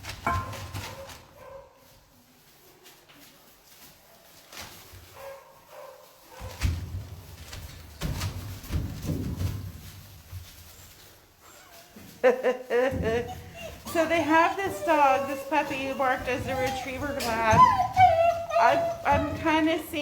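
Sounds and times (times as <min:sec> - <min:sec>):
loud knocks and rattles: 0:06.5 - 0:10.0
puppies yipping and whimpering: 0:12.8 - 0:20.0.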